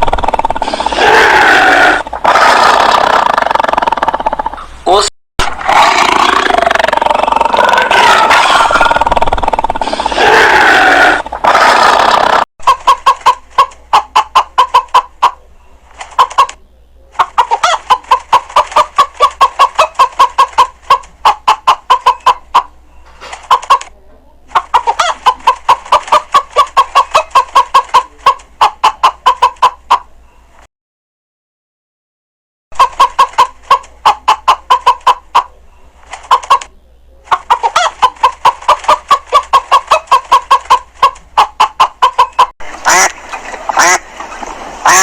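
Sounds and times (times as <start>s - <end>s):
chicken clucking: 0.0s - 30.4s, 32.8s - 45.0s.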